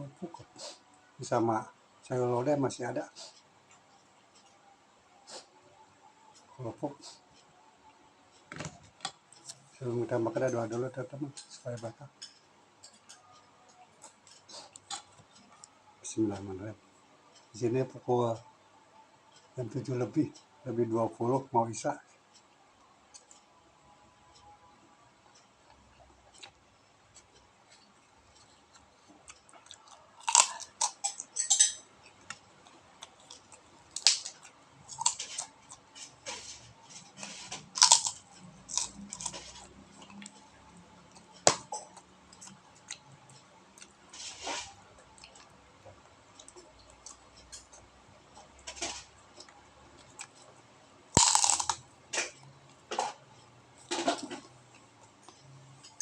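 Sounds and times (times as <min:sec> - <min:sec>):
crunching bites and chews: 0:28.8 - 0:31.3, 0:33.0 - 0:36.1, 0:37.5 - 0:40.4, 0:51.2 - 0:51.8.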